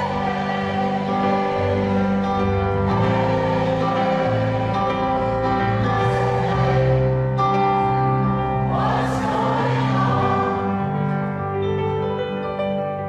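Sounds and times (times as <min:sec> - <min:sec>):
audience singing along: 0:00.0 - 0:11.3.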